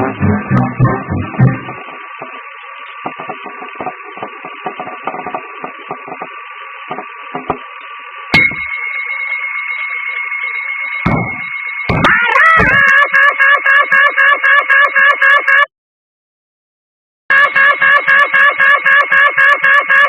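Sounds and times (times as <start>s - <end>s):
steady tone: 0.0s - 2.0s, 8.4s - 12.9s
radio-like static with crackles: 1.2s - 12.8s.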